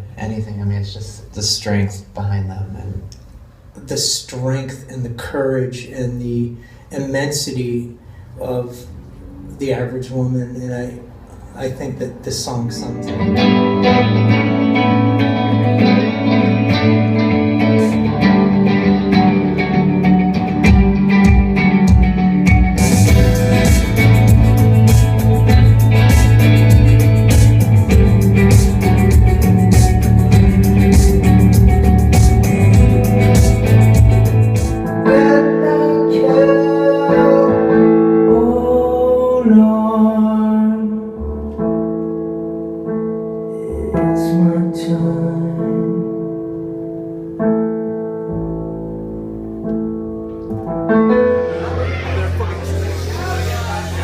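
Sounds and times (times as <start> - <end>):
deep bass: 12.7 - 35.1
rock band music: 12.8 - 38.2, 48.8 - 54.0
electric guitar with effects: 12.8 - 39.2
drums playing: 20.6 - 34.9.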